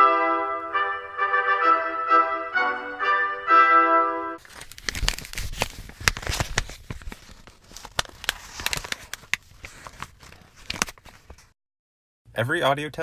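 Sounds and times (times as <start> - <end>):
brass music: 0.0 - 4.4
crinkling and crackling: 4.4 - 11.6.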